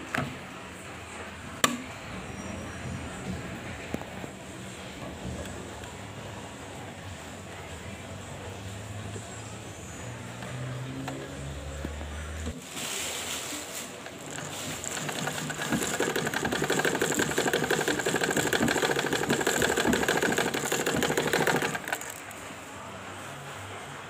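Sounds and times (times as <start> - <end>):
sewing machine clattering: 13.9 - 22.4.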